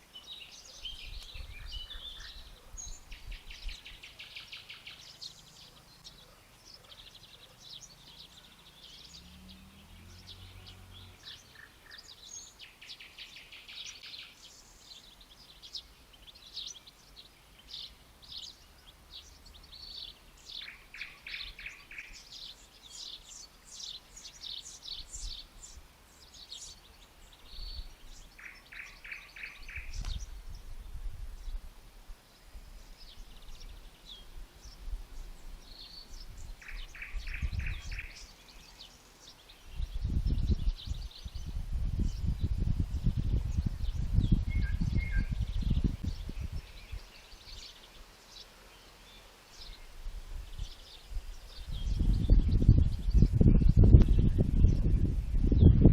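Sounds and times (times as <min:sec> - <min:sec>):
wild birds singing: 0:00.0 - 0:55.9
wind buffeting microphone: 0:00.8 - 0:04.0, 0:29.6 - 0:31.8, 0:32.6 - 0:38.3, 0:39.5 - 0:47.6, 0:49.6 - 0:55.9
whistled bird notes: 0:43.5 - 0:47.8.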